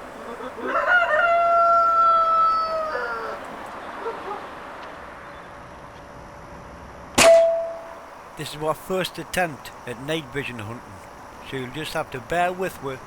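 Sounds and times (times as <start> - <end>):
long animal call: 0.0 - 4.4.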